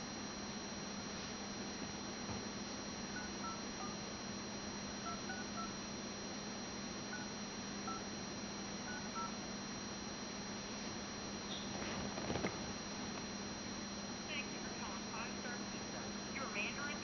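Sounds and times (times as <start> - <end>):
phone keypad touch tones: 3.2 - 4.0, 5.0 - 5.8, 8.9 - 9.4.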